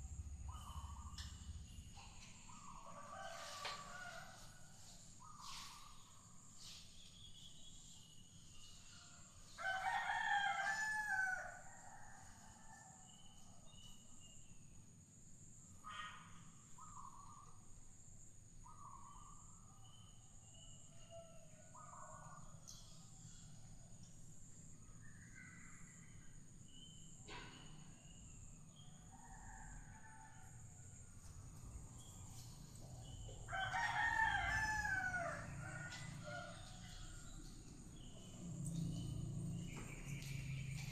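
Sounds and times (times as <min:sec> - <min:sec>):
rooster crowing: 0:02.8 - 0:04.5, 0:09.6 - 0:13.0, 0:33.0 - 0:37.4.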